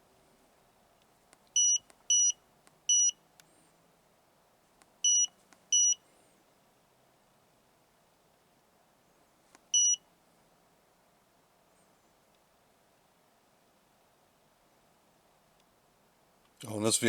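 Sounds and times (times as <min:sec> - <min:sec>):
high-pitched scan tool beeps: 0:05.1 - 0:06.0, 0:09.8 - 0:10.0.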